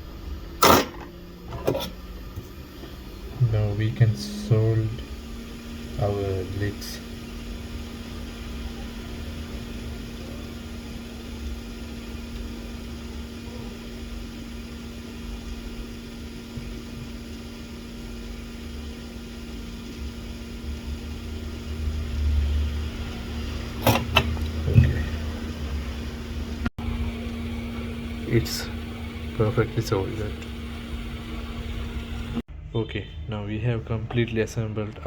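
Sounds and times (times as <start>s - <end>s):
electrical hum: 0.0s - 35.0s.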